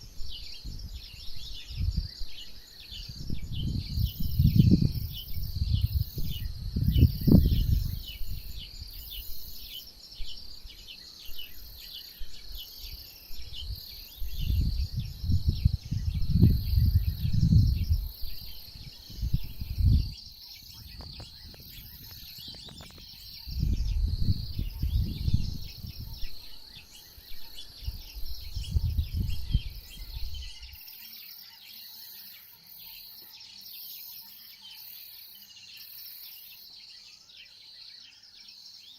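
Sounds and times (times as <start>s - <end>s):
crickets and insects chirring: 0.0s - 38.9s
low rumbling on microphone: 3.2s - 8.8s, 13.5s - 20.2s, 20.8s - 26.4s, 27.8s - 30.7s.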